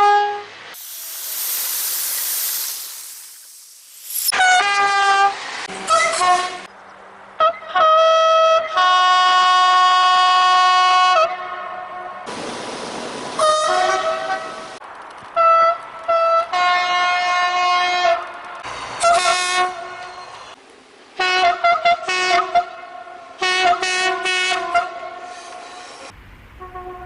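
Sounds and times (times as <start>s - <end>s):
two-tone train horn blasts: 0.0s - 0.5s, 4.3s - 6.7s, 7.4s - 12.3s, 13.4s - 14.8s, 15.4s - 18.2s, 19.0s - 20.3s, 21.2s - 25.7s, 26.6s - 27.0s
rushing noise: 0.6s - 6.6s.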